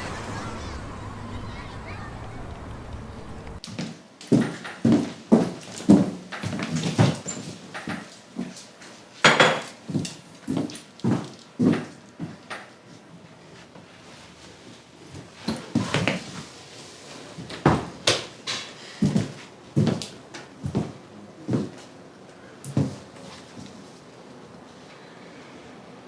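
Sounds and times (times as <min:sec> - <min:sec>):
objects knocking and clattering: 0:09.2 - 0:10.2.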